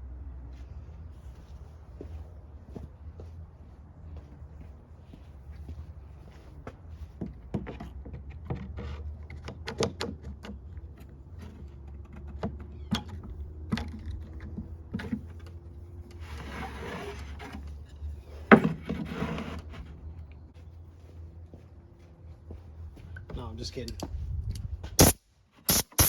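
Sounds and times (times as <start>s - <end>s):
wood scraping against wood: 13.9s - 20.4s.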